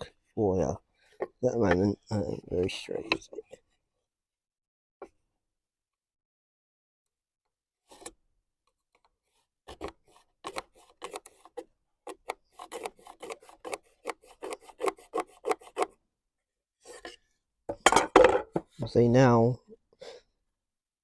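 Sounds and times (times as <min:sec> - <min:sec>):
pencil scratching on wood: 0:09.7 - 0:16.0.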